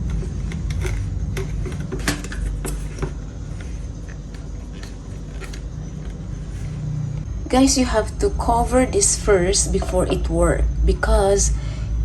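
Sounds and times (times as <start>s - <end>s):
grinder parts clicking and knocking: 0.0s - 6.6s
steady low rumble: 3.2s - 12.0s.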